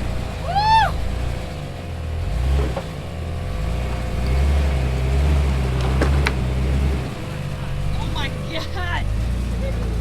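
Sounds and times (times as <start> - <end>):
off-road vehicle engine droning: 0.0 - 10.0
sharp knocks: 5.8 - 6.5.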